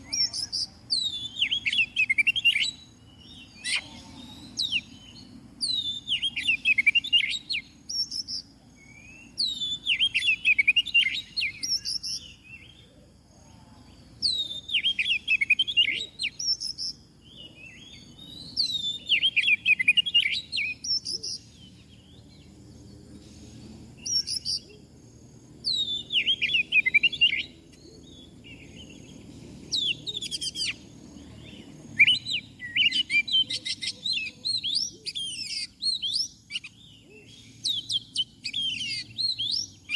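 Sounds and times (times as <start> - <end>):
bird singing whistled phrases: 0.0 - 12.8, 14.2 - 17.0, 17.6 - 21.4, 24.0 - 24.7, 25.7 - 29.0, 32.0 - 39.9.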